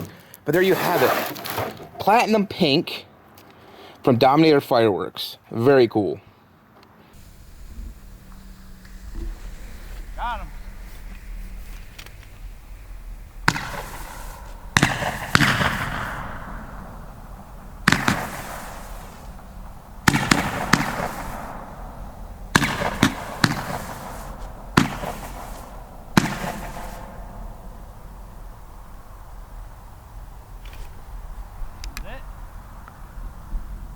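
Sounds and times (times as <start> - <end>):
roman candles popping: 7.2 - 29.2
firework hiss: 7.2 - 33.9.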